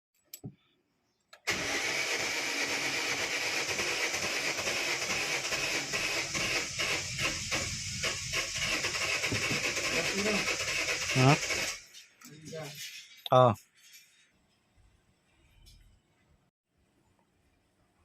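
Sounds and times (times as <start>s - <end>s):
car engine cranking on starter: 1.4s - 11.9s.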